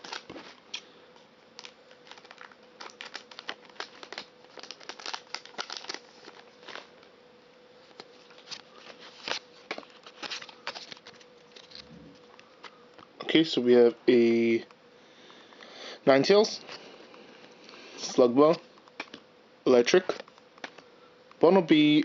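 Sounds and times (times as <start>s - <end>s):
cards being handled: 0.0s - 0.9s, 1.6s - 7.0s, 7.8s - 13.1s, 20.0s - 20.9s
foil wrapper crinkling and tearing: 0.0s - 7.0s, 7.8s - 12.8s.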